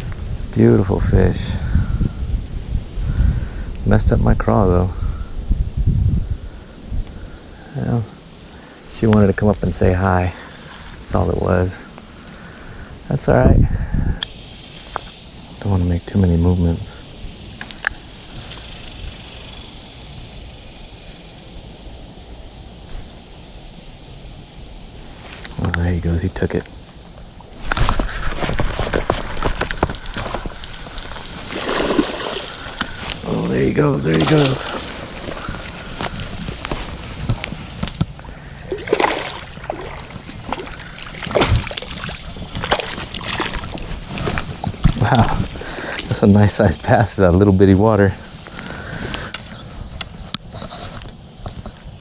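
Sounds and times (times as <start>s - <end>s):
steady high hiss: 0.0s - 52.0s
fish splashing in water: 28.3s - 33.0s, 38.2s - 44.8s.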